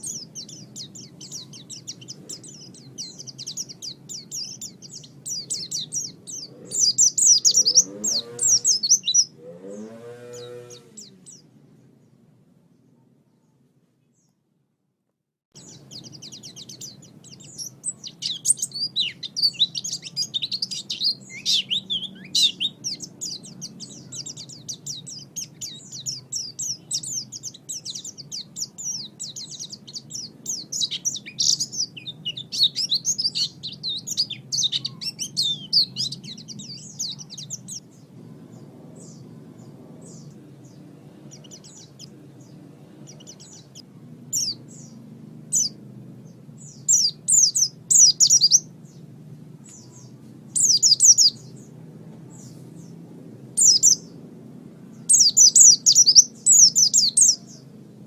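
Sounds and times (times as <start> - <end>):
bird twittering song: 0.0 - 14.4, 15.6 - 57.8
low recording hum: 15.6 - 58.0.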